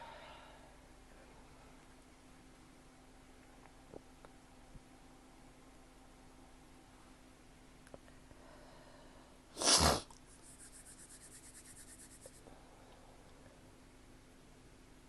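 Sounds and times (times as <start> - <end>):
intake of breath: 8.4 - 9.4
person sneezing: 9.6 - 10.1.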